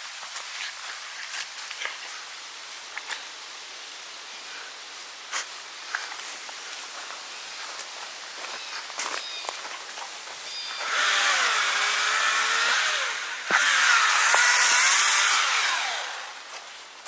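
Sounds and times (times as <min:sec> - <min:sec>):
small engine revving: 0:10.7 - 0:16.5.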